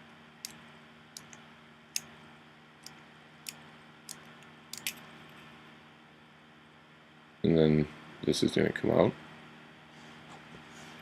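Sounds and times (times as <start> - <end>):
faint low hum: 0.0 - 11.0
small sharp screwdriver clicks: 4.8 - 5.0.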